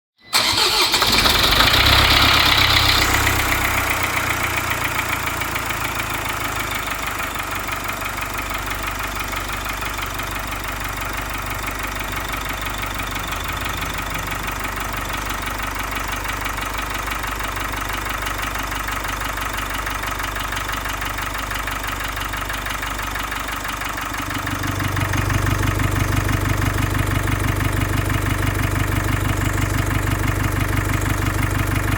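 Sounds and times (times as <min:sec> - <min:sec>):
car engine idling with ticking: 0:00.3 - 0:31.9
deep drone: 0:12.1 - 0:16.8.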